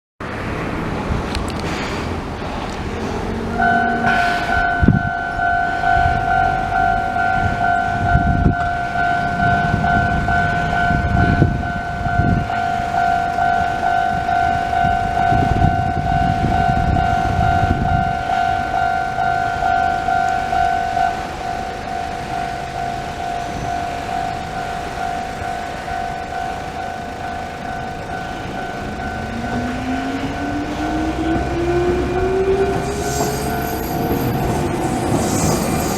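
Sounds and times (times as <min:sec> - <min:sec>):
level crossing warning bell: 0:03.0 - 0:35.9
rising whine: 0:26.3 - 0:35.9
low rumbles: 0:27.0 - 0:35.9.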